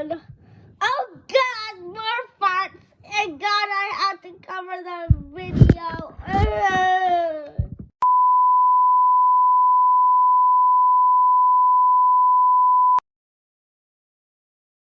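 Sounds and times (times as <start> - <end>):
loud electronic beep tone: 8.0 - 13.0.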